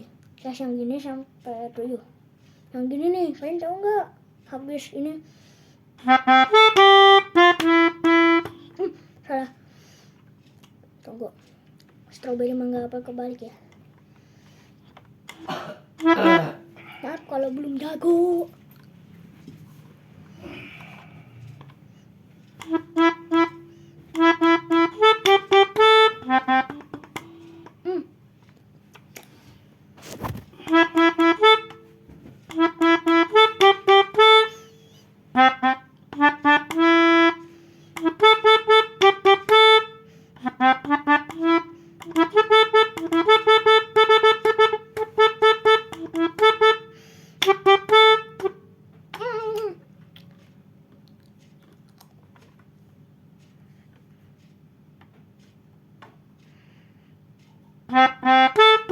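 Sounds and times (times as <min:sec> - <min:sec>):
melodica playing quick short notes: 0:32.5 - 0:46.8.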